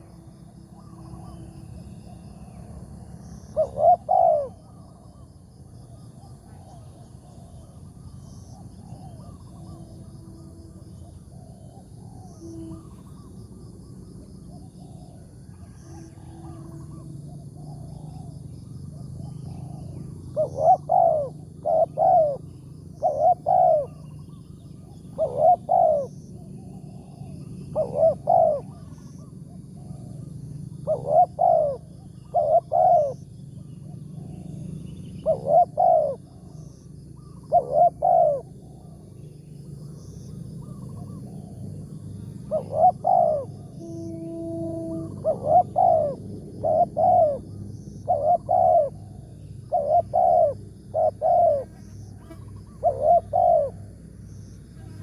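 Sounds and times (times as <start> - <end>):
dove cooing: 0.0 - 13.4, 14.1 - 39.2, 40.1 - 55.0.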